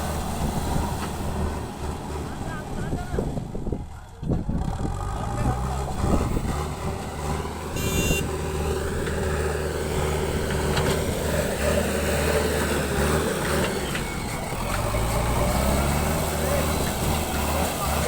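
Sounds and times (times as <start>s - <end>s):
diesel engine under load: 0.0s - 18.0s
short high squeal: 7.8s - 8.3s.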